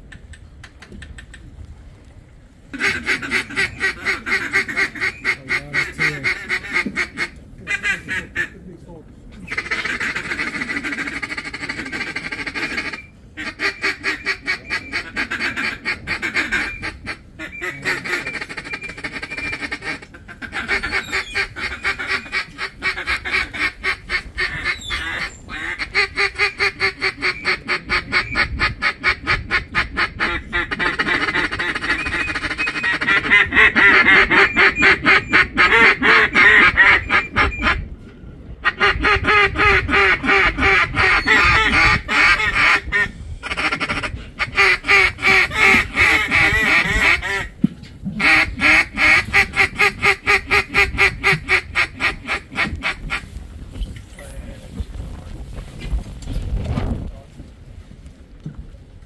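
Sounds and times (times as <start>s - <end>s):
duck quacking: 2.8s - 8.6s, 9.5s - 37.9s, 38.6s - 47.6s, 48.2s - 53.3s.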